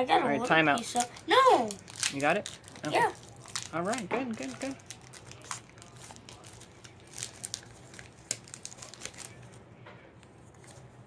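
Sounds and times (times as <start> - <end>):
foil wrapper crinkling and tearing: 0.8 - 9.6.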